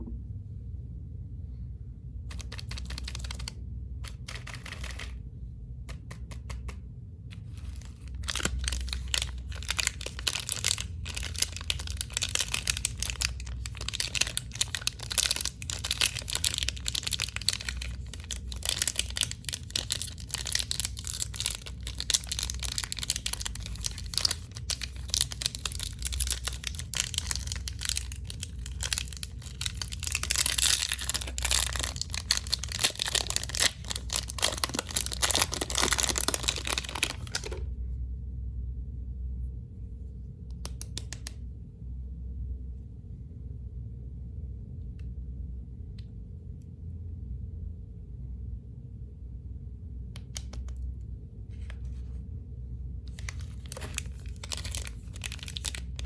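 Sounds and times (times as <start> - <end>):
plastic wrappers crinkling and tearing: 2.3 - 5.2, 5.9 - 37.6, 53.1 - 56.0.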